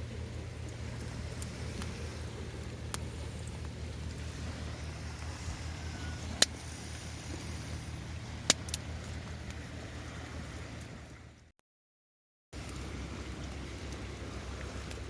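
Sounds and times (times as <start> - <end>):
campfire crackling: 0.0 - 10.9, 12.6 - 15.0
low rumble: 0.0 - 11.5.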